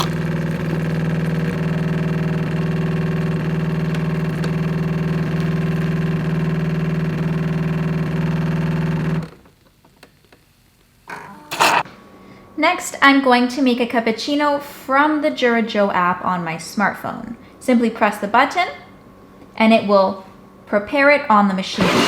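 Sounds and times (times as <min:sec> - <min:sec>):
espresso machine motor hum: 0:00.0 - 0:09.2.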